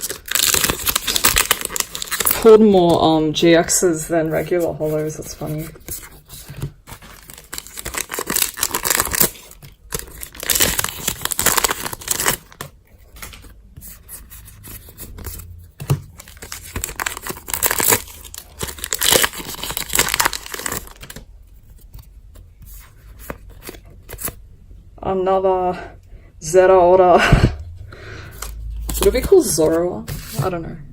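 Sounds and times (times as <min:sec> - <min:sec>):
foil pack tearing and crinkling: 0:00.0 - 0:02.5, 0:06.9 - 0:13.4, 0:16.2 - 0:21.2.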